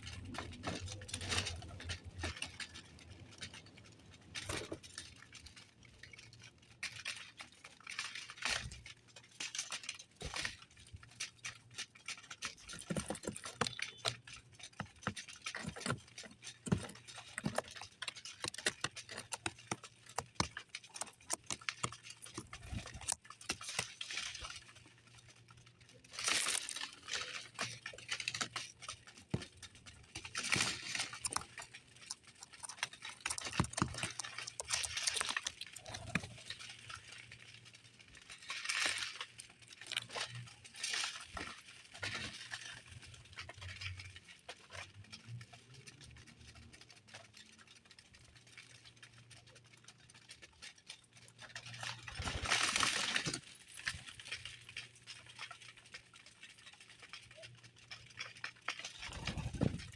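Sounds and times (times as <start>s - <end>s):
birds tapping and scratching: 0.0s - 59.9s
bird wings rustling: 59.0s - 59.9s.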